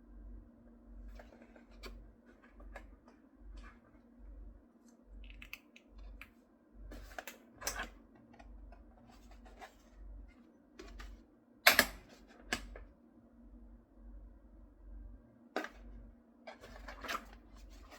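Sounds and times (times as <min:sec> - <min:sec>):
clicks and taps of small parts: 0:05.2 - 0:06.3.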